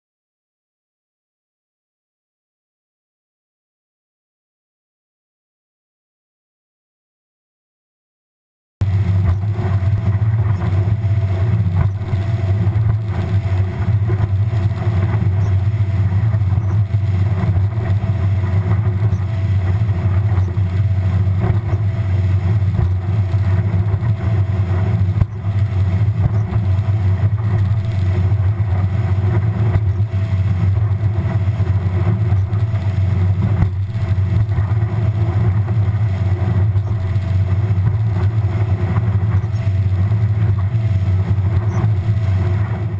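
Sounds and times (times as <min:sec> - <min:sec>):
outboard motor droning: 0:08.8 - 0:42.9.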